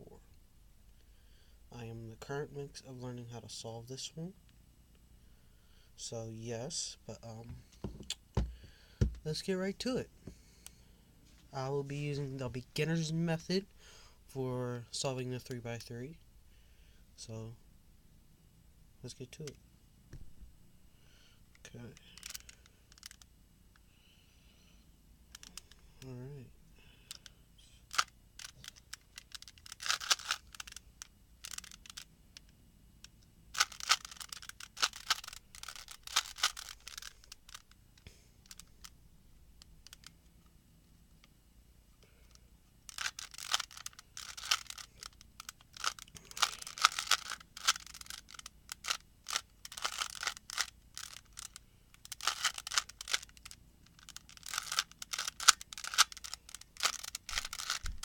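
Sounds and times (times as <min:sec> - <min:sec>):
plastic puzzle cube clacking: 0:22.1 - 0:23.3, 0:25.3 - 0:25.8, 0:27.9 - 0:32.5, 0:33.5 - 0:37.8, 0:38.4 - 0:38.9, 0:39.6 - 0:40.3, 0:42.3 - 0:58.0.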